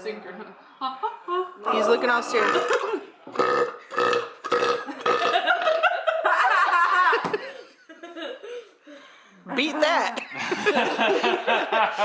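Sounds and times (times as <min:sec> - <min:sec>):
person belching: 0:01.6 - 0:05.8.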